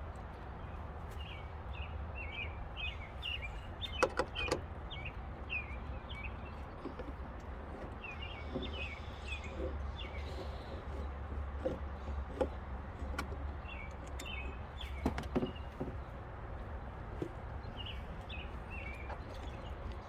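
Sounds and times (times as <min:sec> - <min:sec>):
small birds chirping: 0:00.5 - 0:20.0
sharp clicks and knocks: 0:03.9 - 0:04.7, 0:06.7 - 0:16.1.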